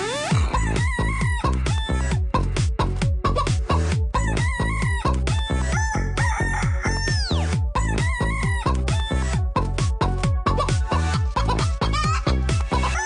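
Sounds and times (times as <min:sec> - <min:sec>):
techno track with chicken clucks: 0:00.0 - 0:13.0
thumping kick drum: 0:00.3 - 0:11.0
rooster crowing samples: 0:05.6 - 0:08.3, 0:12.8 - 0:13.0.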